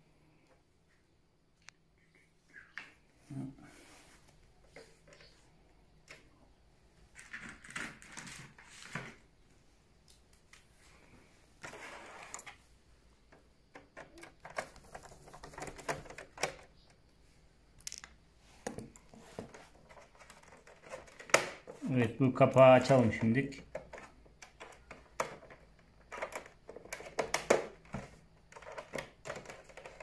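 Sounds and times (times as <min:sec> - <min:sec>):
hands tapping and rattling: 0:13.3 - 0:17.0, 0:17.8 - 0:21.8, 0:22.5 - 0:30.0.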